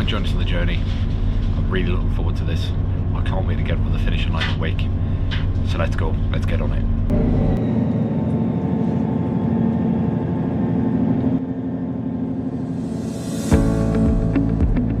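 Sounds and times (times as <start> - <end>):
diesel train engine rumbling: 0.0 - 15.0
rising whoosh: 7.1 - 15.0.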